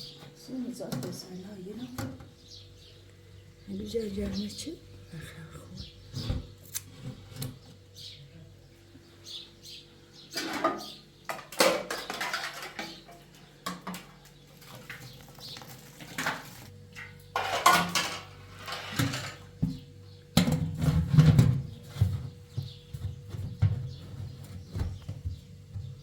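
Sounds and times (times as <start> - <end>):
hard objects clattering: 10.3 - 16.7, 17.3 - 19.8.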